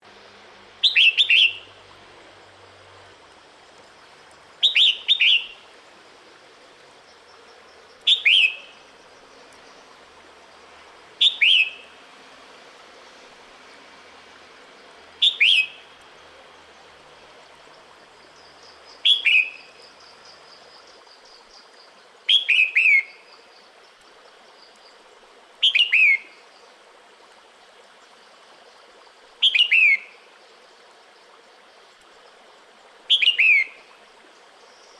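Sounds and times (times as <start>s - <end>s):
bird giving sharp calls: 8.1s - 8.8s, 11.2s - 11.9s, 15.2s - 15.8s.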